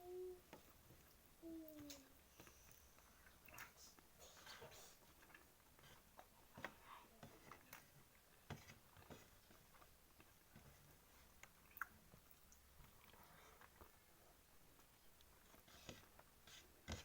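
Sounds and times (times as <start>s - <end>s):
chewing smacks: 11.4s - 14.0s.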